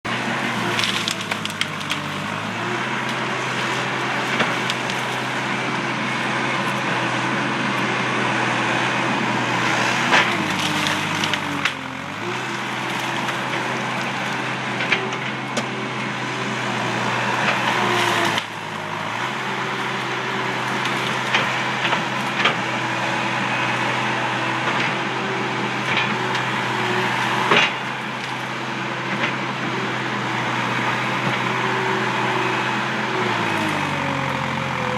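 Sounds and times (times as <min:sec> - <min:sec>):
diesel engine running hard: 0:00.0 - 0:34.9
wood and brush breaking: 0:00.2 - 0:06.4, 0:09.6 - 0:15.1, 0:17.5 - 0:22.7.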